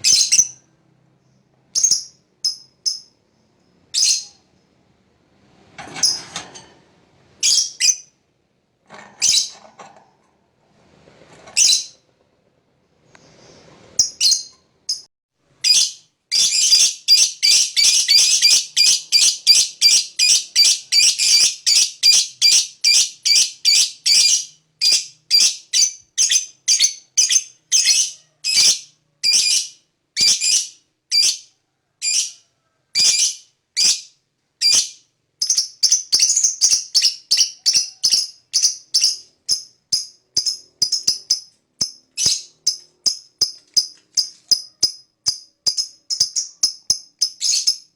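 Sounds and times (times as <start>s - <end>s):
lovebird shrill chirps: 0.0s - 0.6s, 3.9s - 4.4s, 7.4s - 8.1s, 14.0s - 32.4s, 33.0s - 47.9s.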